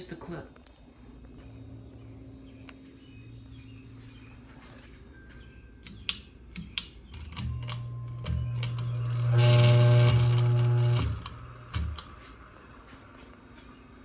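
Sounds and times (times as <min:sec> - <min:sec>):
fan motor electrical buzz: 0:00.8 - 0:14.0
sharp clicks: 0:05.8 - 0:09.2, 0:10.0 - 0:12.2.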